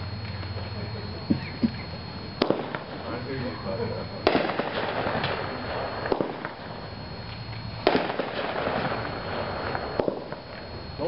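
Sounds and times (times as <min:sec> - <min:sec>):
firework bangs: 0:02.4 - 0:03.5, 0:04.2 - 0:06.9, 0:07.8 - 0:10.7
firework crackling: 0:02.4 - 0:03.5, 0:04.2 - 0:11.0.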